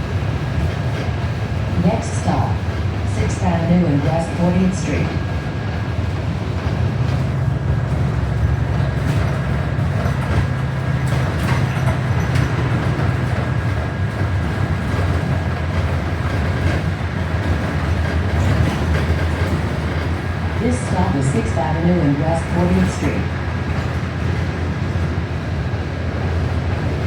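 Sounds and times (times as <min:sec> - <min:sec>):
bus engine and road rumble: 0:00.0 - 0:27.0.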